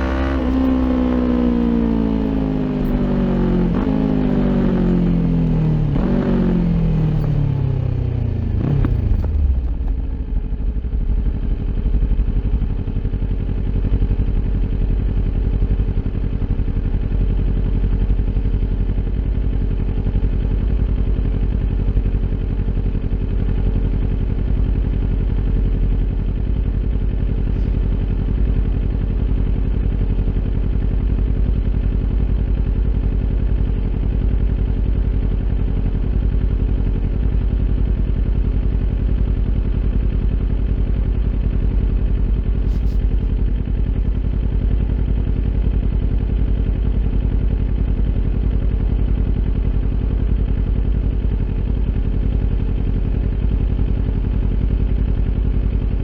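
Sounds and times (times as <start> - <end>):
motorcycle engine running: 0.0 - 56.0.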